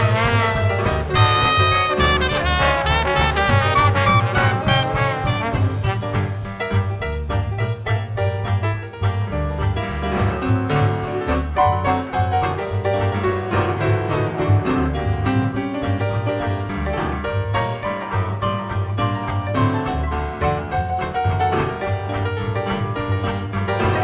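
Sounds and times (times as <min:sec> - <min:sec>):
steady bass line: 0:00.0 - 0:17.2
jazz band playing: 0:00.0 - 0:24.0.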